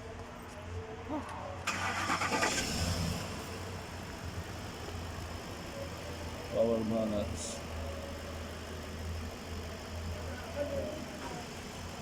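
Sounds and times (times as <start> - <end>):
engine starting and idling: 1.6 - 3.6.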